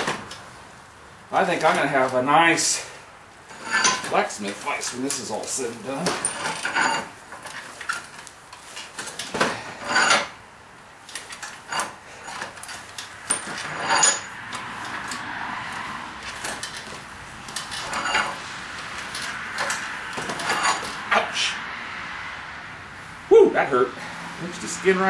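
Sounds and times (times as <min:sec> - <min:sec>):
metal scraping: 0:03.4 - 0:10.4, 0:11.1 - 0:21.6
metal parts clanking: 0:03.5 - 0:10.4, 0:11.0 - 0:15.2, 0:16.2 - 0:21.1.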